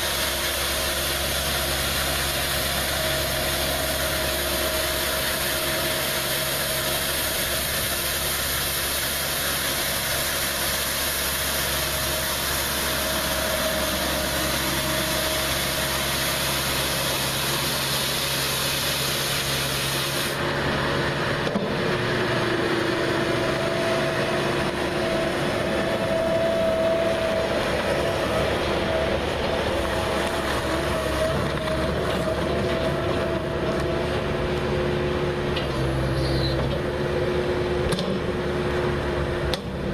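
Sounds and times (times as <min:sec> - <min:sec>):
hydraulic broom brushing hiss: 0:00.0 - 0:20.4
skid steer engine running: 0:00.0 - 0:39.9.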